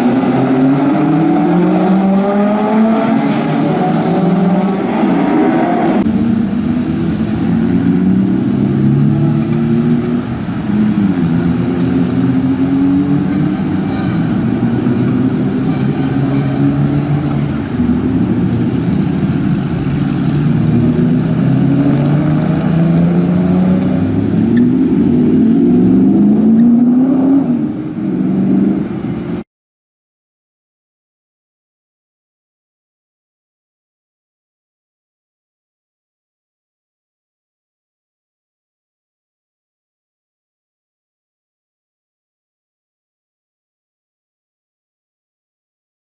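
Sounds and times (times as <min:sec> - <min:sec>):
racing car engines passing by: 0:00.0 - 0:29.4.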